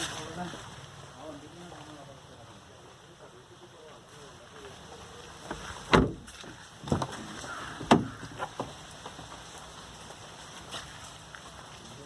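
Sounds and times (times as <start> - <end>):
sudden thuds: 5.5 - 7.2.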